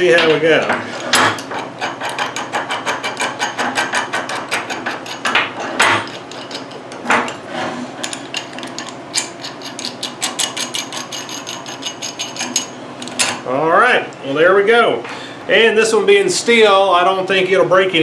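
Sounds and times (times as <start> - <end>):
heavier metal knocks: 0.0 - 1.6
metal nut clicking and rattling: 0.0 - 7.4, 8.0 - 13.4.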